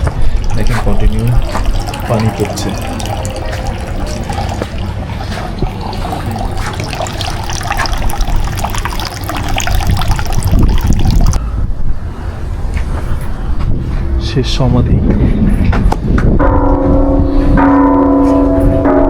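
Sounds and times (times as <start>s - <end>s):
water falling into a basin: 0.0s - 11.4s.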